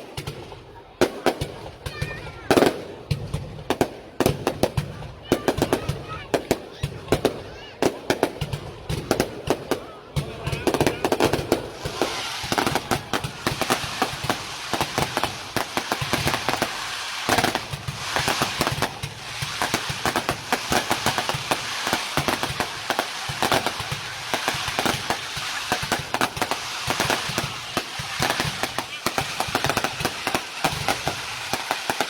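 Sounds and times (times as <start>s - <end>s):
fireworks bangs and crackling: 0.0s - 32.0s.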